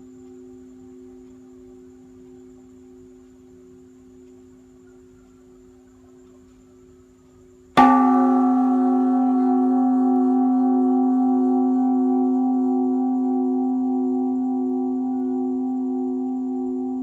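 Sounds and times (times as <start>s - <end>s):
temple bell ringing: 7.8s - 17.0s.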